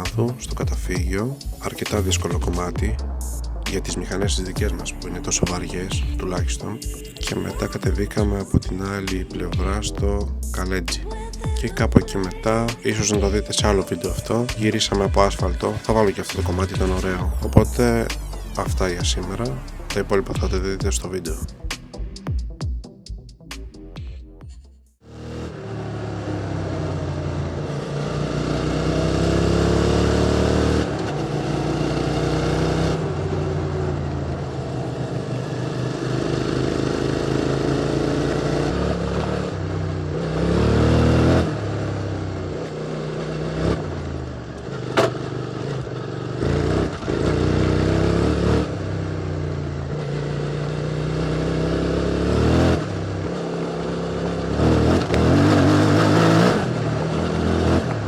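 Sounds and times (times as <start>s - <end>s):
motorcycle engine accelerating: 0.0s - 22.4s, 25.0s - 58.0s.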